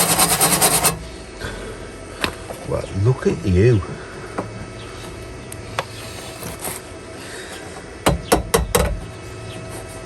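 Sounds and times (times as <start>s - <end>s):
faint steady hum: 0.0s - 10.0s
sharp knocks: 8.0s - 9.0s.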